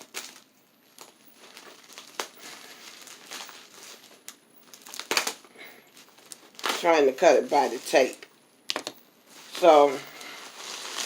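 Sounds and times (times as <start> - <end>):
bubble wrap clicks: 0.0 - 7.0, 8.1 - 9.0
bubble wrap crinkling: 0.0 - 11.0.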